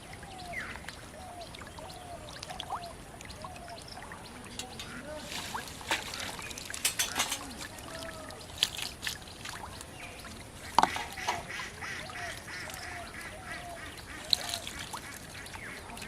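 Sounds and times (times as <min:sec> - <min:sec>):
sharp knocks or splashes: 0:04.5 - 0:09.8, 0:10.7 - 0:11.8
ducks quacking: 0:04.6 - 0:07.5, 0:10.7 - 0:16.0.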